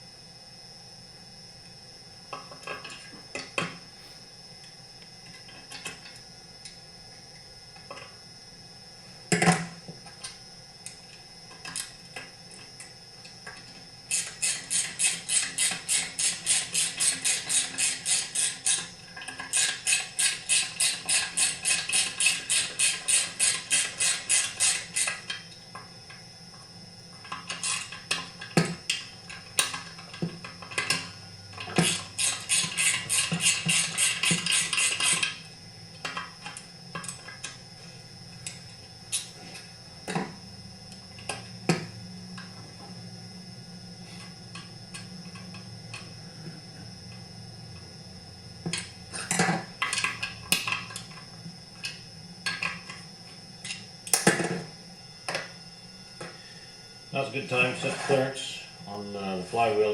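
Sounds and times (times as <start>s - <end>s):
knocks of tools and parts: 53.6s - 54.7s.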